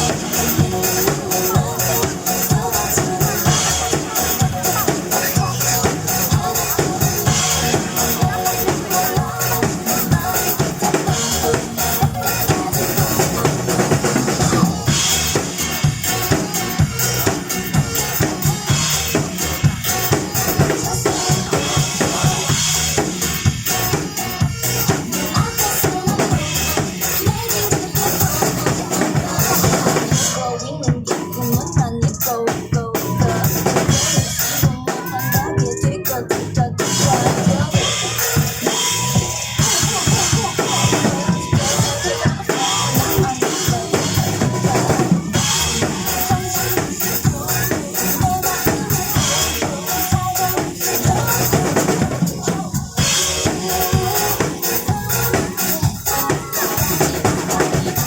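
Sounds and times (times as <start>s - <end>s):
drum kit playing: 0.0s - 58.0s
upbeat pop backing track: 0.0s - 58.0s.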